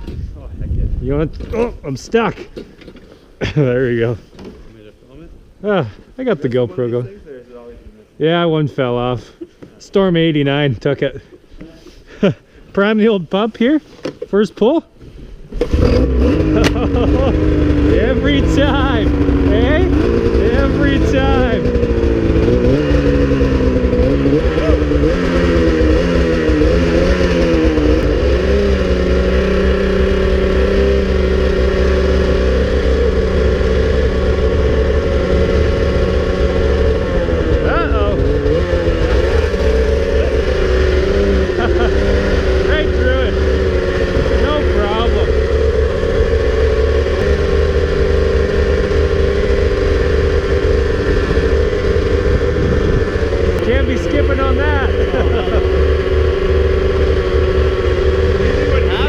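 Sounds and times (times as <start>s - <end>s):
snowmobile engine running: 15.6s - 59.0s.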